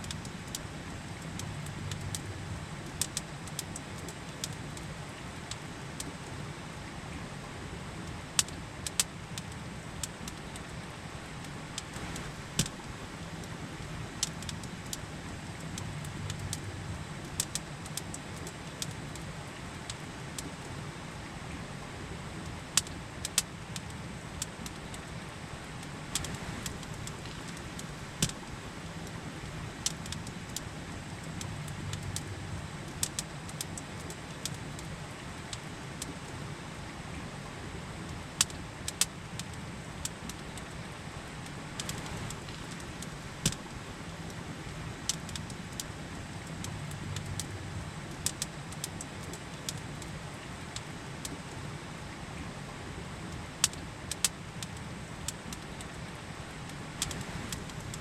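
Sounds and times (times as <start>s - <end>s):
campfire crackling and popping: 0.0s - 6.3s, 8.1s - 20.7s, 22.4s - 36.4s, 37.9s - 51.7s, 53.6s - 58.0s
river rushing: 25.0s - 55.3s.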